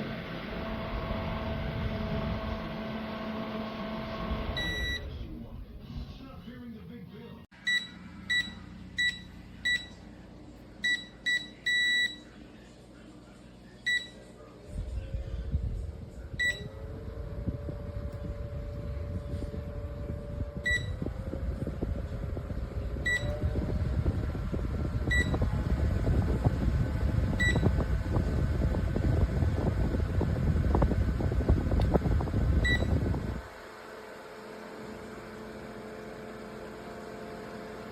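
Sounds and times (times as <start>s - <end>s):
rushing air rumble: 0.0s - 2.8s, 14.7s - 33.5s
fan motor whir: 0.0s - 6.7s, 7.6s - 37.9s.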